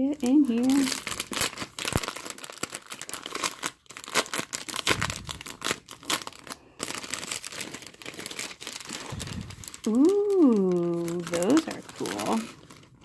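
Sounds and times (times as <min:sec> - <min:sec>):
packaging torn and crinkled: 0:00.2 - 0:13.0.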